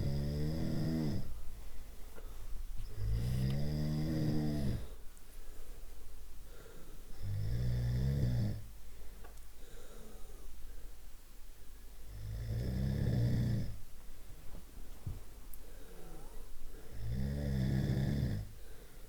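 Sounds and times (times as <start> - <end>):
person snoring: 0.0 - 1.2, 3.0 - 4.9, 16.0 - 18.5
quiet breathing: 0.0 - 7.8, 8.5 - 19.0.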